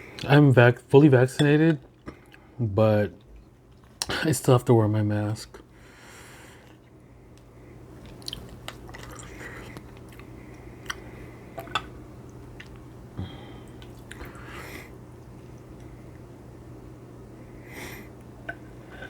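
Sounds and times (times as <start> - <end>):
low hum: 6.8 - 19.0
wet chewing mouth smacks: 8.0 - 12.8.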